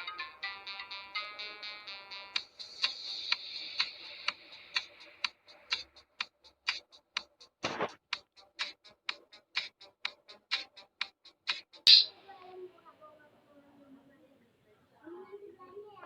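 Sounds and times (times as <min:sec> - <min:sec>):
clock-like ticking: 0:02.4 - 0:12.1.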